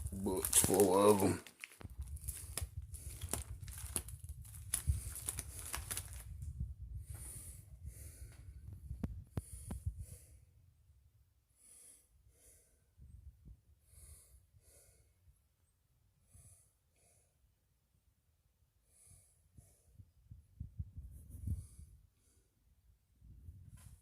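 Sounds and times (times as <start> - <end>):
soft breaths: 0.0 - 10.6, 11.5 - 13.2, 13.8 - 15.4, 16.2 - 17.5, 18.8 - 20.4, 21.1 - 22.7.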